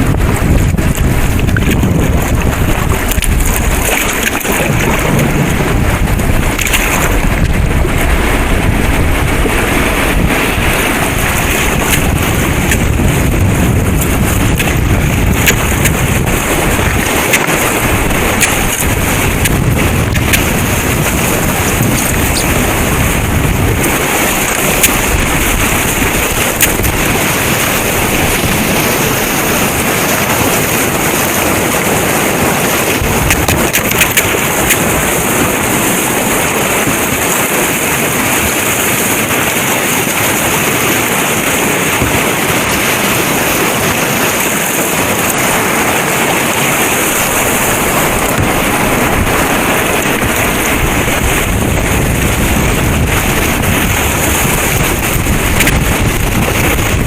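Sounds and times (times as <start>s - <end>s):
river whitewater rushing: 0.0s - 57.0s.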